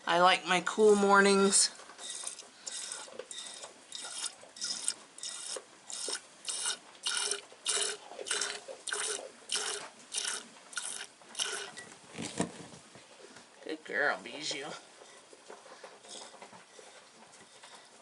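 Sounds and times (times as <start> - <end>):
milk squirting into a pail: 2.0 - 11.8.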